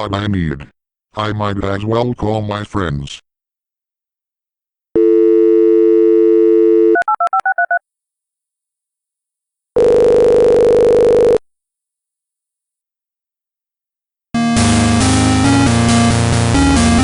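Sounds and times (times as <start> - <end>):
telephone dial tone: 5.0 - 7.8, 9.8 - 11.4
telephone ringback tone: 5.0 - 7.8, 9.8 - 11.4
touch-tone dialing beeps: 6.8 - 7.8.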